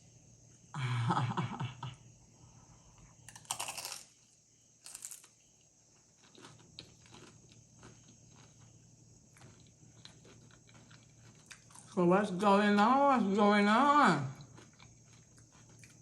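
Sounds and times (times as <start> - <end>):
tortilla chips crunching: 3.3 - 4.1, 4.8 - 5.3, 6.2 - 12.0, 14.4 - 16.0.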